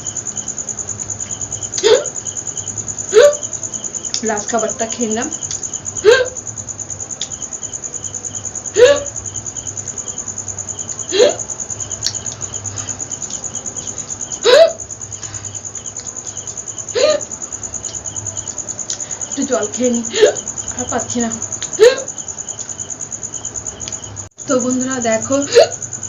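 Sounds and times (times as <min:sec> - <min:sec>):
woman hiccuping: 0:01.8 - 0:02.2, 0:03.1 - 0:03.5, 0:06.0 - 0:06.4, 0:08.8 - 0:09.2, 0:11.1 - 0:11.5, 0:14.4 - 0:14.8, 0:17.0 - 0:17.3, 0:20.1 - 0:20.4, 0:21.8 - 0:22.1, 0:25.5 - 0:25.8.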